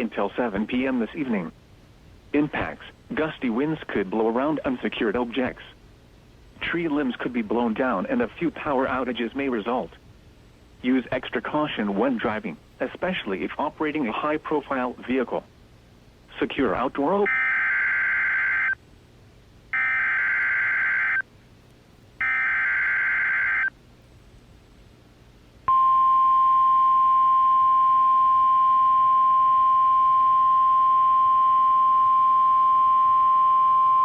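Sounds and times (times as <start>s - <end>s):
steady warning alarm tone: 17.3s - 18.8s, 19.8s - 21.2s, 22.2s - 23.7s.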